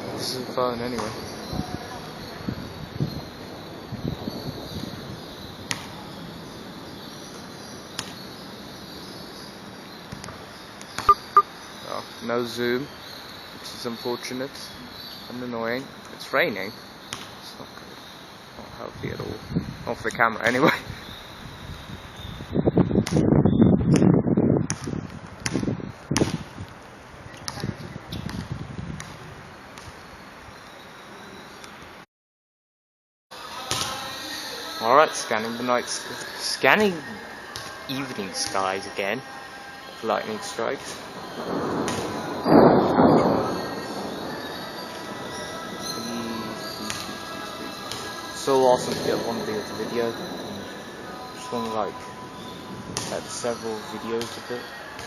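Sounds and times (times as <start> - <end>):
light rain hiss: 0.0 - 22.3, 40.0 - 55.0
insects chirping: 0.0 - 22.8, 33.4 - 55.0.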